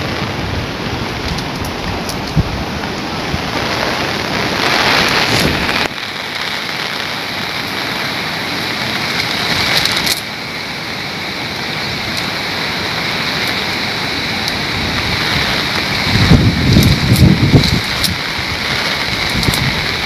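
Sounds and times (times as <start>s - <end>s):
wind buffeting microphone: 0.0s - 6.0s, 11.3s - 20.0s
smooth rushing noise: 0.0s - 20.0s
steady rain: 0.0s - 20.0s.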